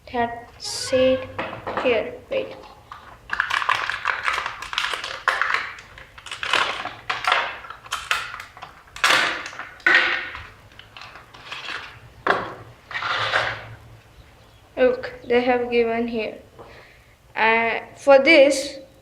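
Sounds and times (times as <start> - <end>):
cardboard and paper rustling: 2.6 - 13.6.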